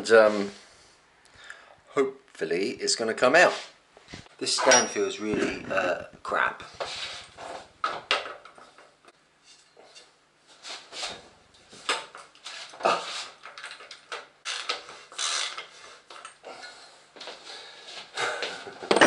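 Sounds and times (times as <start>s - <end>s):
metal tools clinking and scraping: 4.4s - 6.0s, 11.9s - 16.8s, 18.7s - 19.0s.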